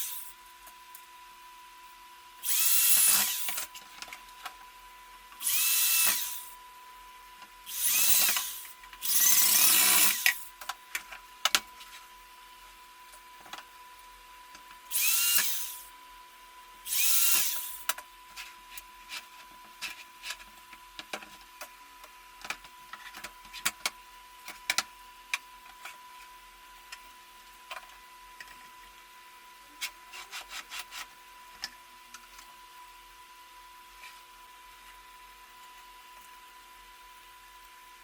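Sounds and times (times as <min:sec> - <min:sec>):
electric drill whine: 0:00.0 - 0:00.4, 0:02.4 - 0:03.8, 0:05.3 - 0:06.6, 0:07.6 - 0:10.6, 0:14.9 - 0:16.0, 0:16.8 - 0:18.0.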